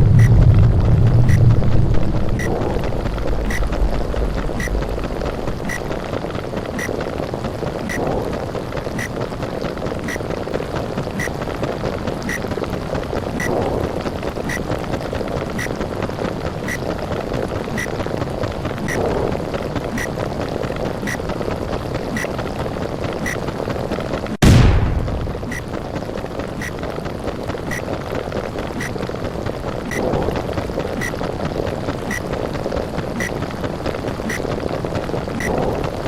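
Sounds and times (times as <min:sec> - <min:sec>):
explosion blast: 0:00.0 - 0:05.6, 0:24.4 - 0:25.6
underwater rumble: 0:00.0 - 0:15.4, 0:24.4 - 0:27.4
short regular ticks: 0:00.1 - 0:00.4, 0:02.4 - 0:05.9, 0:07.8 - 0:08.3, 0:18.8 - 0:19.3, 0:26.6 - 0:26.8, 0:31.0 - 0:31.2, 0:33.2 - 0:33.4, 0:34.2 - 0:34.5, 0:35.4 - 0:35.8.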